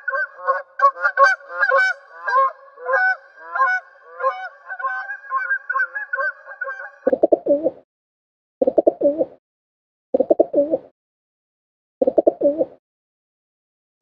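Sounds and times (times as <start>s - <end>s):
geese honking: 0.0s - 7.1s
pigeons cooing: 7.0s - 7.8s, 12.1s - 12.8s.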